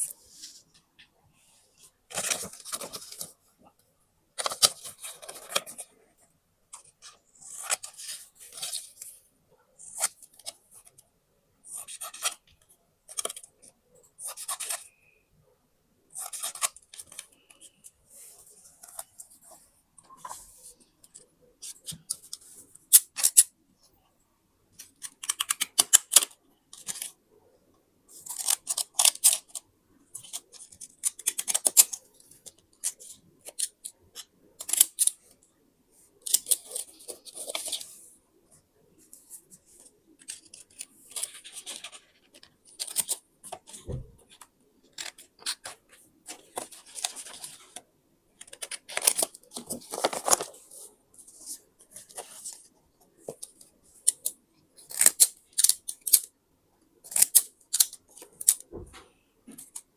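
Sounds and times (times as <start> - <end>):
scissors snipping paper: 54.9 - 56.3, 57.1 - 58.6.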